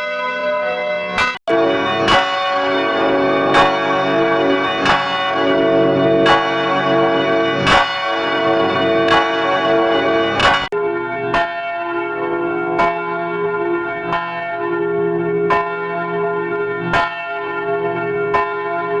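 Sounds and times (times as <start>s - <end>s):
church bells ringing: 0.0s - 15.0s.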